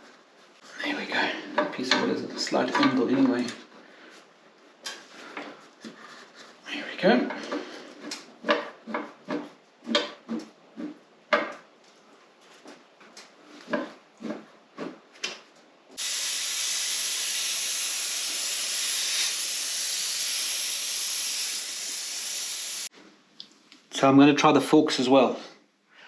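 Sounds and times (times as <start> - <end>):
steady hiss: 16.0 - 22.9.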